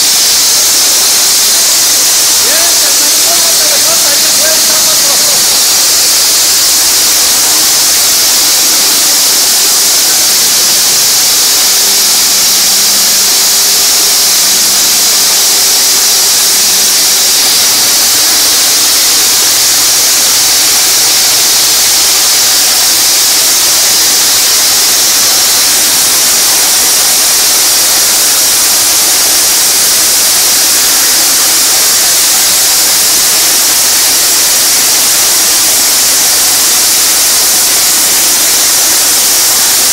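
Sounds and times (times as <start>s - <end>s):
concrete saw grinding: 0.0s - 9.2s.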